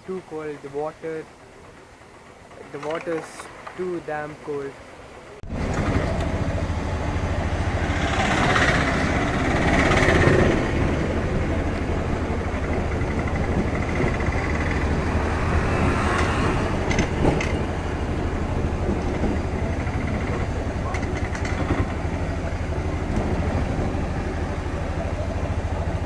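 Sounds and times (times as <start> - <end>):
vehicle engine rumbling: 0.0 - 26.0.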